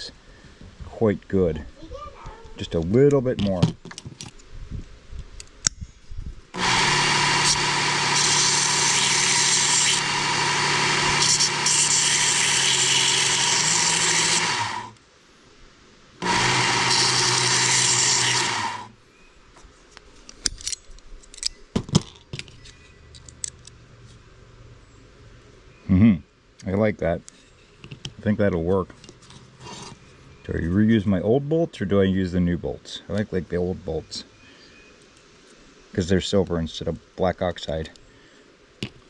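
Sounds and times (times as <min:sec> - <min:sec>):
belt grinder grinding steel: 0:06.6 - 0:15.0, 0:16.2 - 0:18.9.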